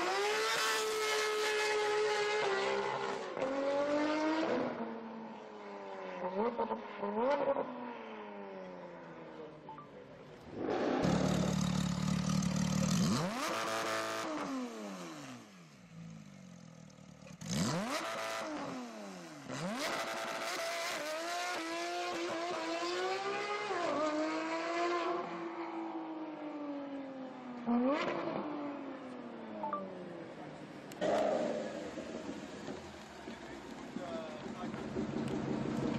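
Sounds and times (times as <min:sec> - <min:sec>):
car engines revving and accelerating: 0:00.0 - 0:09.6, 0:10.2 - 0:35.9
cars passing by: 0:17.0 - 0:35.9.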